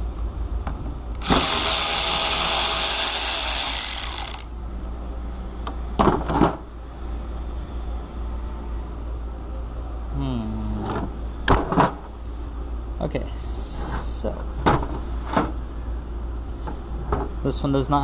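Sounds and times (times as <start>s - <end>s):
power tool running: 1.2s - 4.5s.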